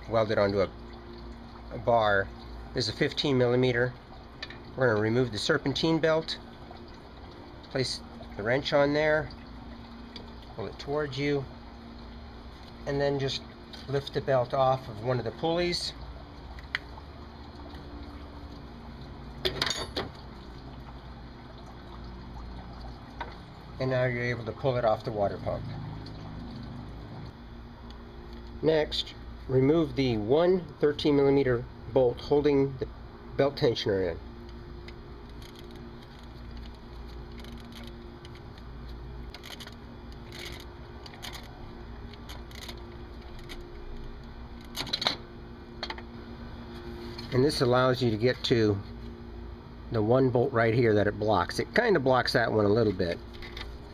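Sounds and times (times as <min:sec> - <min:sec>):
steady low hum: 0:00.0 - 0:53.9.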